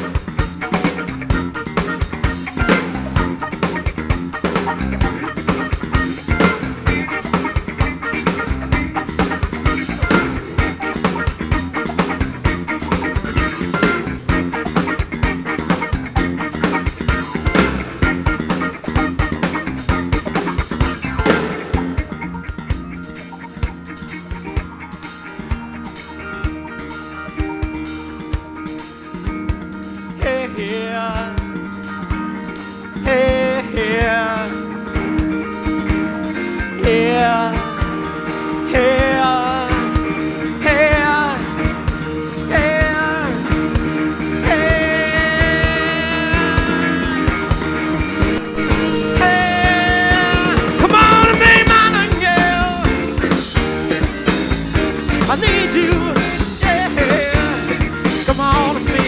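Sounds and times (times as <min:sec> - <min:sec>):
drum kit: 0:00.0 - 0:59.0
rock band playing live: 0:00.0 - 0:59.0
wavering melodic line: 0:36.4 - 0:59.0.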